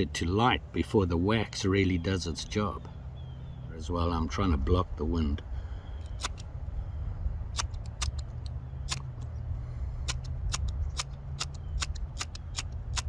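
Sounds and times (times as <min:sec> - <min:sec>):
wind rumble on microphone: 0:03.2 - 0:13.0.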